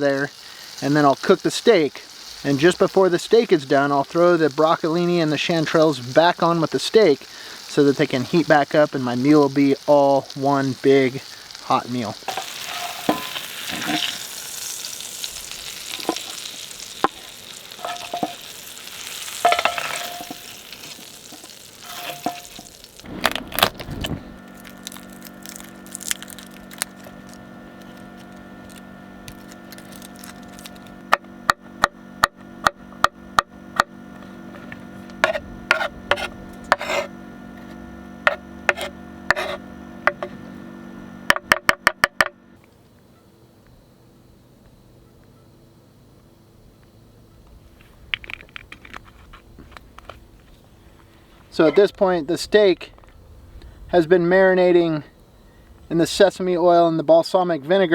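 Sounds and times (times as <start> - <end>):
vegetables sizzling in a skillet: 0.0 - 31.4
steady hum: 1.8 - 44.7.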